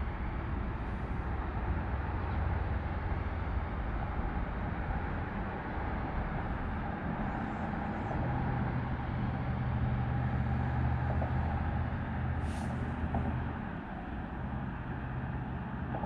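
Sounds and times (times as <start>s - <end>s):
low engine hum: 0.0s - 16.0s
rushing background noise: 0.0s - 16.0s.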